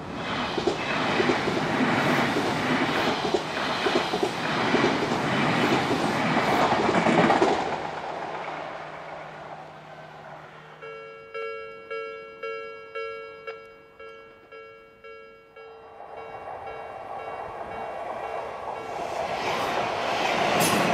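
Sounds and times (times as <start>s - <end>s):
electric train passing: 0.0s - 20.9s
train wheels clattering over rail joints: 0.5s - 9.6s, 17.2s - 20.9s.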